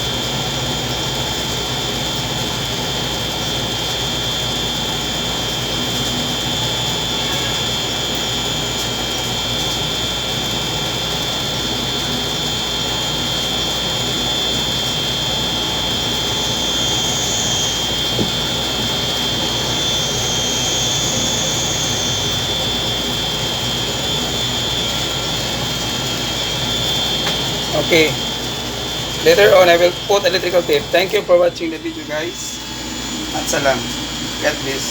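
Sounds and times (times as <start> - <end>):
fan motor whirring: 0.0 - 34.9
thin high tone: 24.2 - 34.9.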